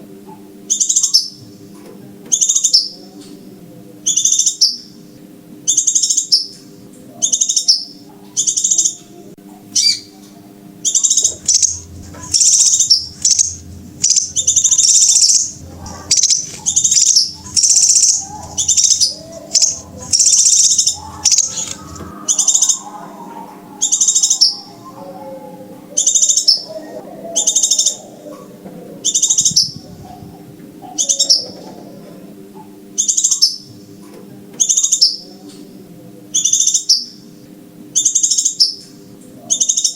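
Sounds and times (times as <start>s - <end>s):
bird high chirps: 9.8s - 10.1s, 10.8s - 28.4s, 29.0s - 31.8s.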